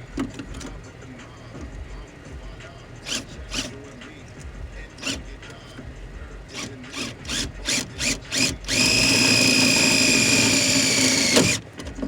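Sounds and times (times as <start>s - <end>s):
power drill driving a screw: 6.6s - 11.6s
drill trigger click: 8.4s - 11.6s.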